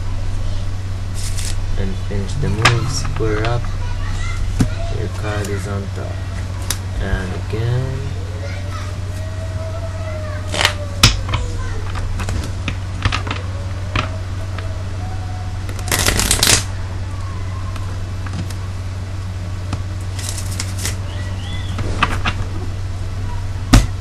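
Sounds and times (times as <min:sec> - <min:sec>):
cards riffle-shuffled: 0:01.2 - 0:01.6, 0:15.7 - 0:16.7, 0:20.1 - 0:21.0.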